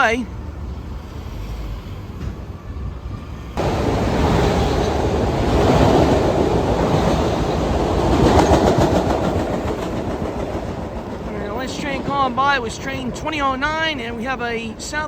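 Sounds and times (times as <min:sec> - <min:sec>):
train wheels rumbling on rail: 0:00.3 - 0:15.0
clickety-clack over rail joints: 0:01.4 - 0:15.0.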